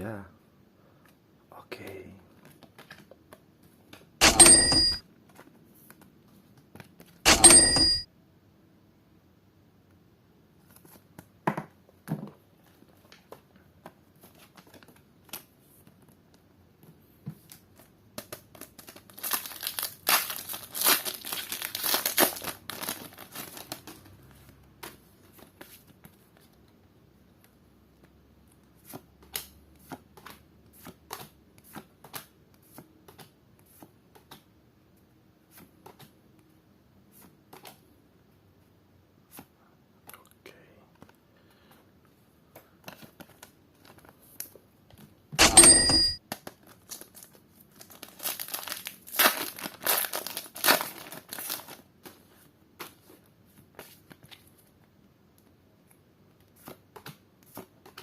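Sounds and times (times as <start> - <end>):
foil wrapper tearing and crinkling: 18.6 - 24.0, 46.3 - 51.9.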